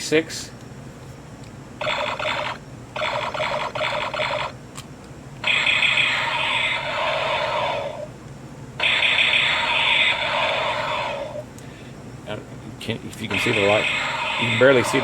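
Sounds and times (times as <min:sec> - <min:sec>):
toy phaser electronic sound effects: 0:01.8 - 0:04.6, 0:05.4 - 0:08.1, 0:08.8 - 0:11.4, 0:13.3 - 0:15.0.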